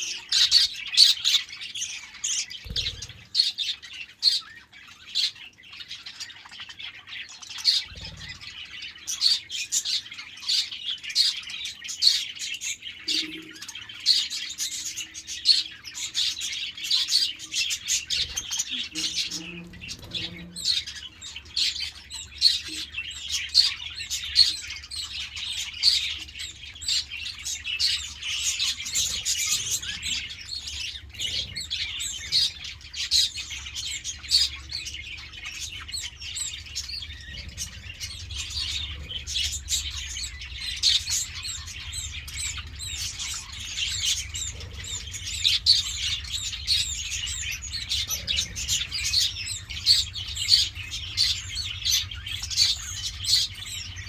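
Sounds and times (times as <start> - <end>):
budgerigars chirping: 0.0 - 54.0
faint low hum: 17.6 - 54.0.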